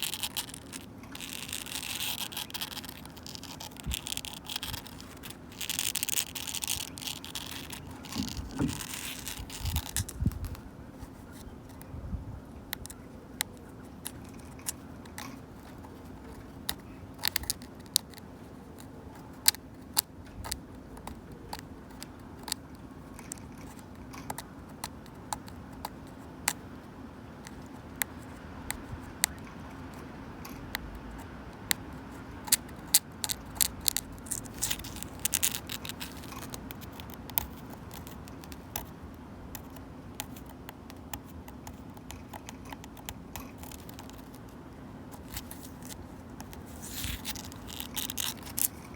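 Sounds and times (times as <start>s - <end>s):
fingernails scratching wood: 0.0s - 10.5s
fingernails clicking on wood: 45.1s - 48.9s.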